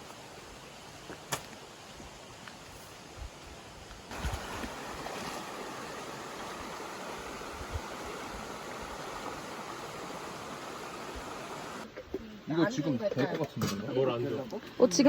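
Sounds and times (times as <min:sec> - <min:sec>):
rain falling: 0:04.1 - 0:11.9.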